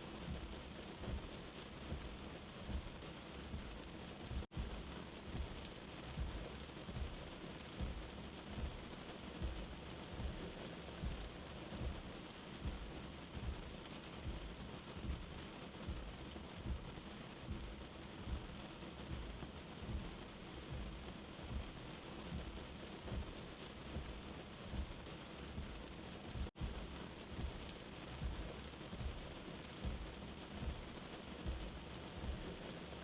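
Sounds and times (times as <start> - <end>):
steady rain falling: 0.0 - 33.0
low rumble of thunder: 0.1 - 7.2.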